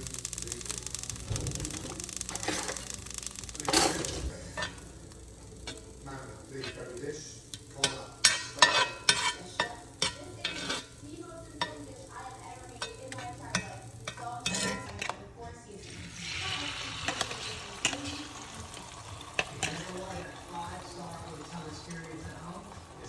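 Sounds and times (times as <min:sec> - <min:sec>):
sizzling in a pan: 0:00.0 - 0:23.0
utensil knocking and scraping pan: 0:07.8 - 0:11.0, 0:12.8 - 0:15.2.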